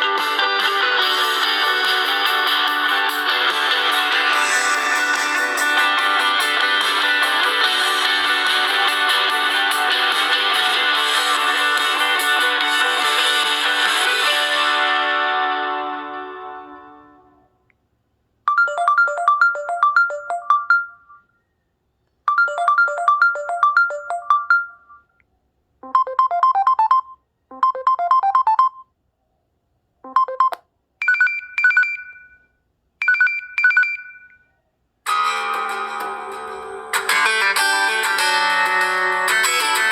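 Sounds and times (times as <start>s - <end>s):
phone ringtone melody: 0.0s - 17.0s, 18.5s - 21.3s, 22.3s - 25.0s, 25.9s - 28.8s, 30.1s - 32.4s, 33.0s - 34.3s
guitar ringtone: 0.0s - 17.2s, 35.1s - 39.9s.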